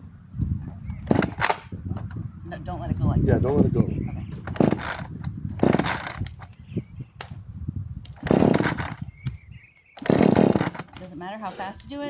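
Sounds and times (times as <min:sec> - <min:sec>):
recoil starter cord rasp: 0:01.0 - 0:01.7, 0:04.3 - 0:06.5, 0:08.1 - 0:09.1, 0:10.0 - 0:11.9
chainsaw engine cranking: 0:01.0 - 0:02.1, 0:04.4 - 0:06.5, 0:08.1 - 0:09.1, 0:10.0 - 0:11.3.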